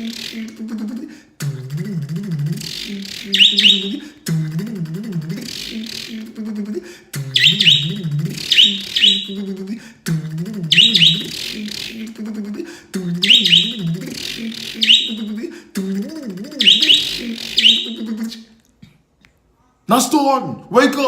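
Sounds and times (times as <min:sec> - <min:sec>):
man imitating car engine: 0:00.0 - 0:05.8, 0:07.2 - 0:09.0
bird chirping: 0:02.6 - 0:04.2, 0:07.3 - 0:09.6, 0:10.7 - 0:12.0, 0:13.2 - 0:15.4, 0:16.6 - 0:18.3.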